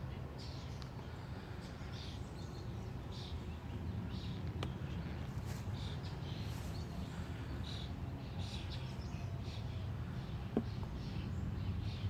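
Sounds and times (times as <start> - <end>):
low background rumble: 0.0 - 12.0.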